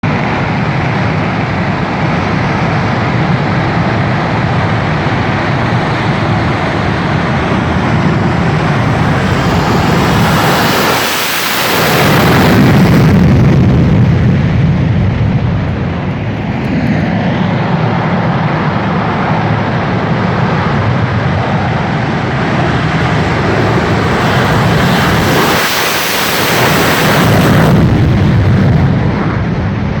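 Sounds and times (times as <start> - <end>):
jet engines roaring: 0.0 - 30.0.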